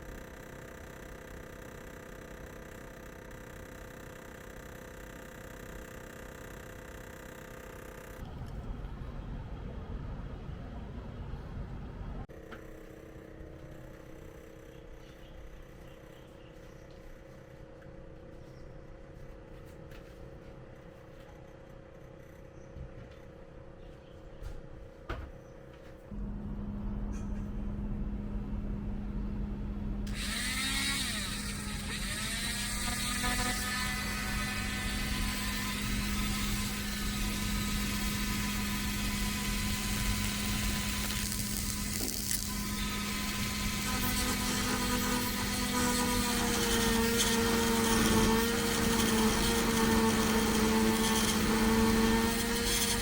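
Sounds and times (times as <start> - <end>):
air conditioner unit humming: 0.0 - 53.0
electric motor humming: 30.0 - 53.0.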